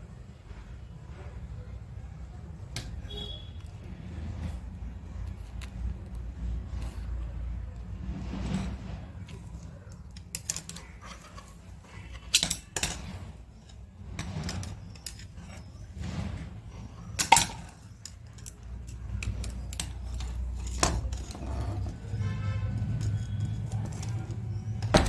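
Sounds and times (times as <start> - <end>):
metal tools clinking: 9.3 - 25.0.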